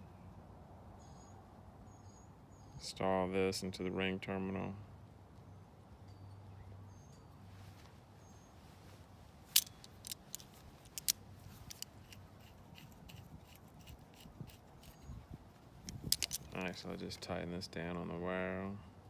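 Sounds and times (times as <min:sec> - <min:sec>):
wire strippers clicking: 0:09.5 - 0:15.1, 0:15.8 - 0:16.7.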